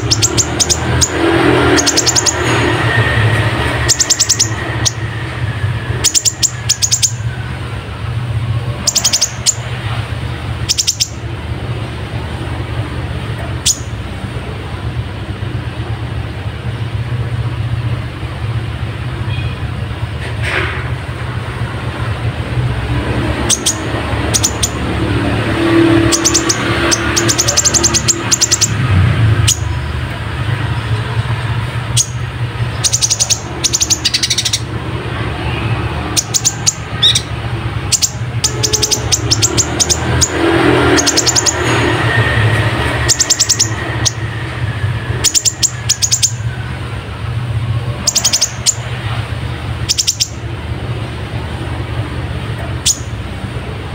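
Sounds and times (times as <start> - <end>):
bird singing chattering trills: 0.0 - 11.8, 12.6 - 14.1, 22.0 - 46.8, 47.8 - 52.0, 52.6 - 53.3.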